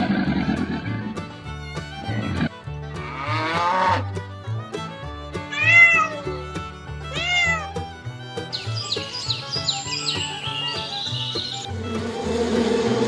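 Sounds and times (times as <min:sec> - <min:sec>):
background music with bass line: 0:00.0 - 0:13.0
cat meowing: 0:05.5 - 0:06.3, 0:07.1 - 0:07.8.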